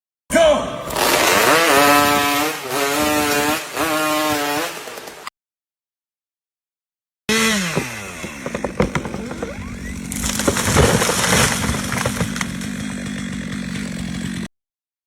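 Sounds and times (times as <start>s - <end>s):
small engine running: 7.3s - 14.5s.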